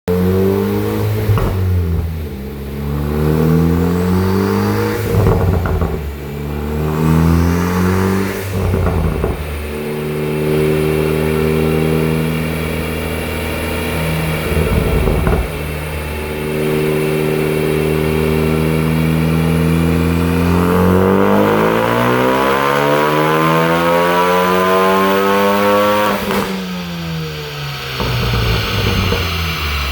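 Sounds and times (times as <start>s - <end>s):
car engine revving: 0.1s - 29.9s
exhaust crackles and pops: 1.0s - 10.3s, 12.3s - 17.8s, 26.0s - 27.0s, 27.8s - 29.9s.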